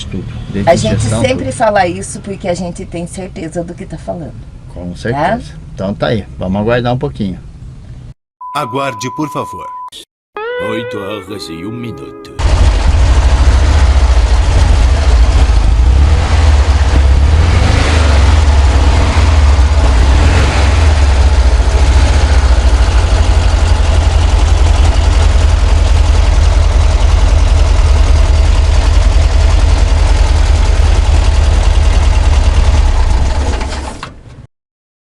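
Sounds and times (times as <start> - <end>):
van engine idling: 12.4 - 17.4, 18.2 - 33.9.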